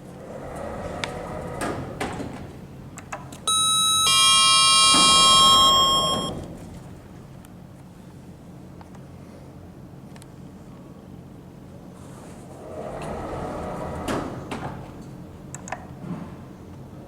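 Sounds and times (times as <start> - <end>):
two-note electronic lift chime: 3.5 - 6.3.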